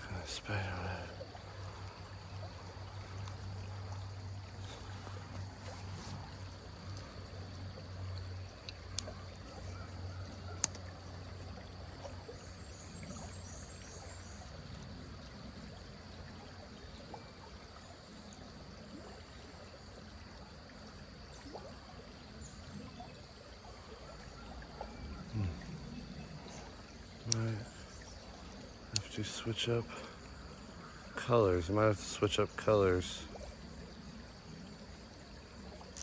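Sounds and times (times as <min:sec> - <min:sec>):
creek water trickling: 0:00.0 - 0:36.0
sharp clicks: 0:10.6 - 0:10.8.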